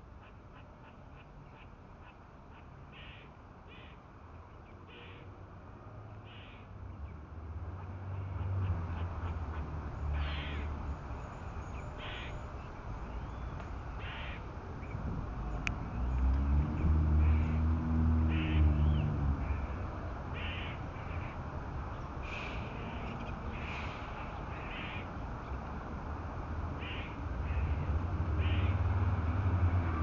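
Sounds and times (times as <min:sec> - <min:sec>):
squirrel alarm calls: 0:00.2 - 0:04.0, 0:06.3 - 0:06.7, 0:10.1 - 0:10.8, 0:11.6 - 0:12.5, 0:13.2 - 0:15.0, 0:18.3 - 0:19.8, 0:20.4 - 0:21.4, 0:22.3 - 0:25.1, 0:26.8 - 0:28.8.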